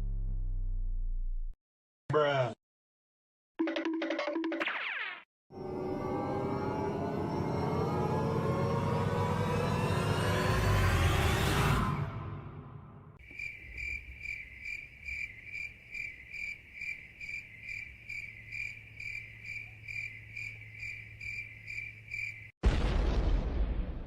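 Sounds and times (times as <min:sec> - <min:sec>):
cricket chirping: 0:13.2 - 0:22.6.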